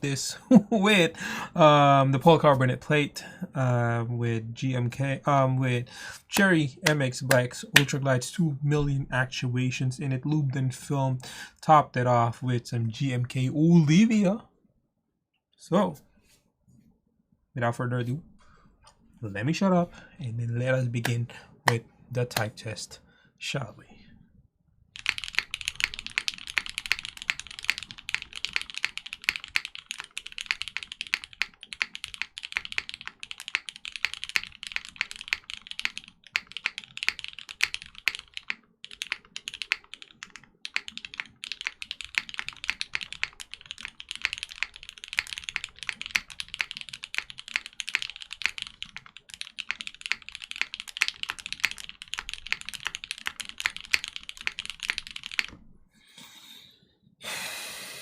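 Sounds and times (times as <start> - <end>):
fast mechanical keyboard typing: 25.0 - 55.6.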